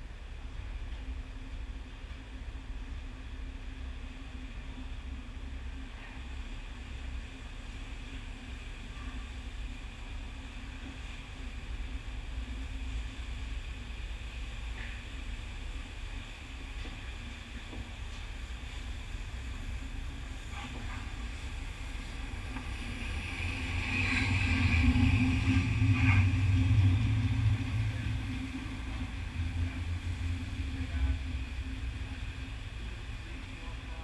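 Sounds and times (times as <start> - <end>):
low rink rumble: 16.5 - 34.0.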